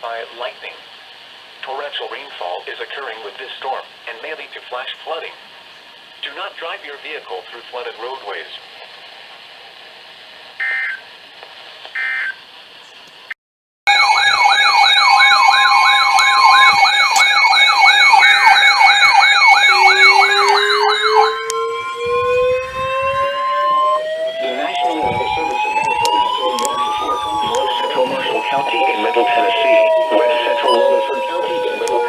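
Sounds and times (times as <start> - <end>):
short electronic tone bursts: 10.6 - 11.0, 12.0 - 12.4, 15.8 - 22.4
slow sirens winding up: 10.6 - 11.0, 11.9 - 12.4, 13.9 - 32.0
sirens wailing: 13.9 - 32.0.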